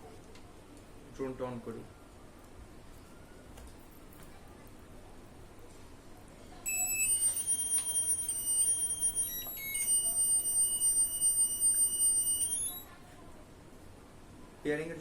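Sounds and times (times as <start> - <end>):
electronic drone power-on beeps: 6.7 - 12.9
steady high electronic tone: 6.7 - 12.9.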